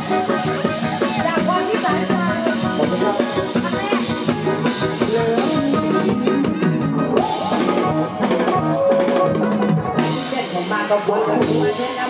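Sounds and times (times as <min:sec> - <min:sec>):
drum kit playing a beat: 0:00.0 - 0:12.0
live band music: 0:00.0 - 0:12.0.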